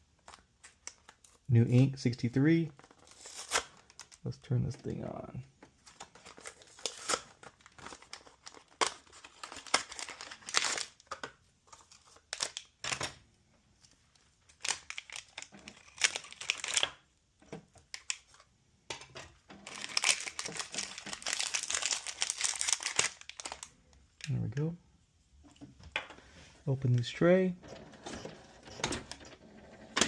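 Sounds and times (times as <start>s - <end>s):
crinkling and rustling: 2.7s - 24.4s.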